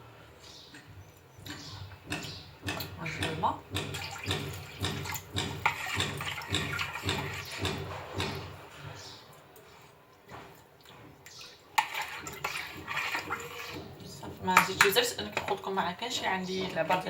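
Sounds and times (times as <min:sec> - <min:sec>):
water pouring and splashing: 0:03.7 - 0:08.8, 0:09.5 - 0:15.7.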